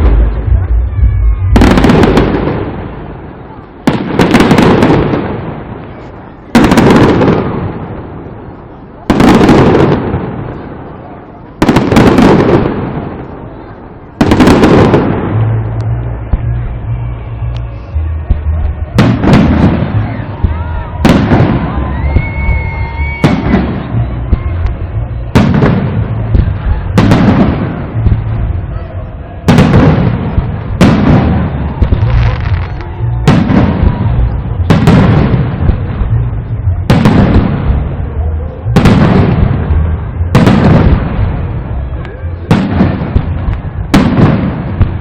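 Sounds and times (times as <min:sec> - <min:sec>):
fireworks bursting: 0:00.0 - 0:45.0
rumbling echo: 0:00.0 - 0:45.0
thin steady whistle: 0:21.6 - 0:25.4.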